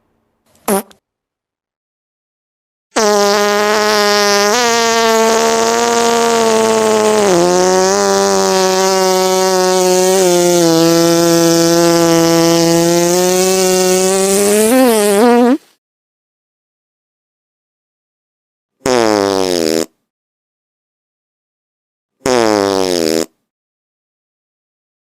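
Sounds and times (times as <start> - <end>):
long fart sound effect: 0.6 - 1.0, 2.9 - 15.8, 18.8 - 20.0, 22.2 - 23.4.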